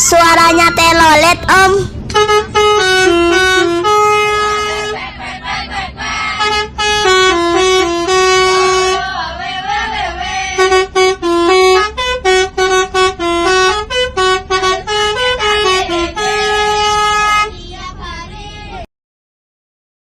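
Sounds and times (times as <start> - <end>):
musical air horns playing a tune: 2.1 - 9.2, 9.8 - 17.5.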